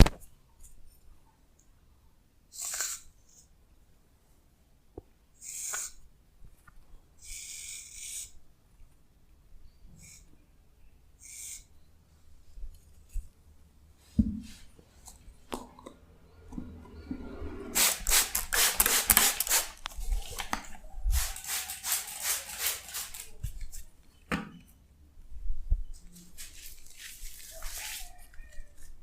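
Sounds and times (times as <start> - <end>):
shaving foam crackling and squishing: 26.4 - 28.9.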